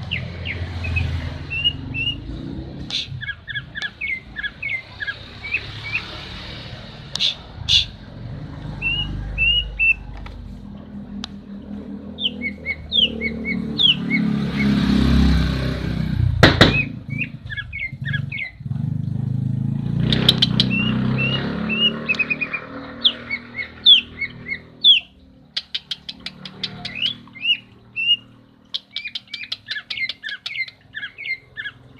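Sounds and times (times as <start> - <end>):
bird whistled chirps: 0.1 - 2.2, 8.8 - 10.0, 12.2 - 14.7, 16.8 - 18.6, 20.1 - 31.8
sharp knock: 16.4 - 16.9.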